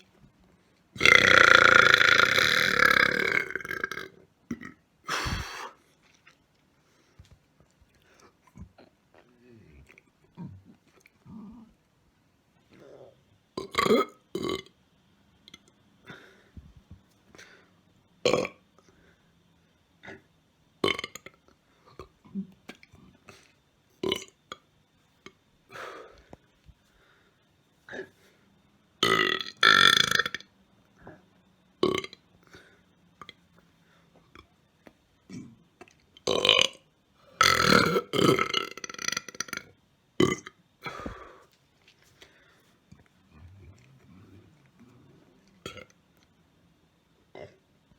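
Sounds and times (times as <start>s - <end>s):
man burping loudly: 1.0s - 5.5s, 13.6s - 14.7s, 18.3s - 18.6s, 29.0s - 30.4s, 37.4s - 41.1s.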